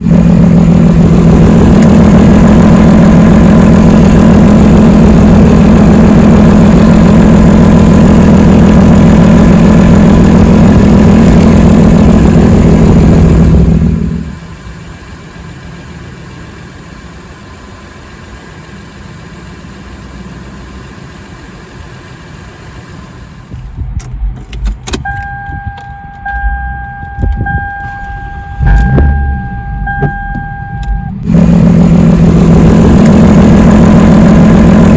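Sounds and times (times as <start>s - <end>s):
car engine with exhaust leak: 0.0s - 34.9s
electronic warning chime: 25.1s - 31.2s.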